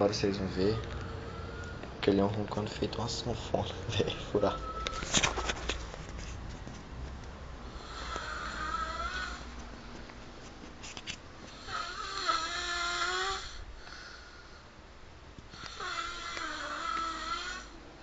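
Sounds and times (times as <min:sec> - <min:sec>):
snoring with whistling pitch: 0:07.8 - 0:09.4, 0:11.7 - 0:13.6, 0:15.6 - 0:17.7.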